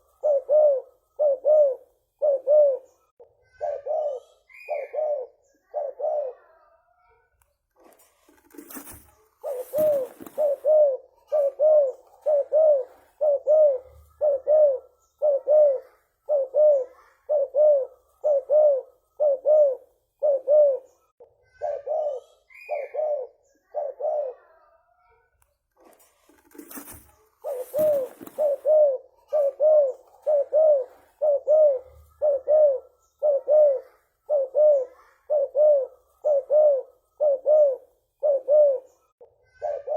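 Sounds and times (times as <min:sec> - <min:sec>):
dove cooing: 0:00.0 - 0:06.6, 0:08.3 - 0:24.7, 0:26.4 - 0:39.9
rustling noise: 0:07.7 - 0:10.7, 0:25.7 - 0:28.9.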